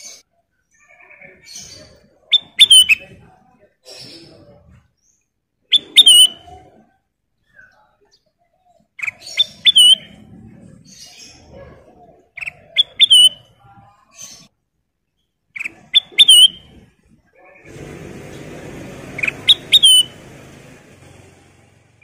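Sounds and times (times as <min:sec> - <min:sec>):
bird singing whistled phrase: 0:05.7 - 0:06.5, 0:09.4 - 0:10.2, 0:12.8 - 0:13.5, 0:16.0 - 0:16.7, 0:19.2 - 0:20.2.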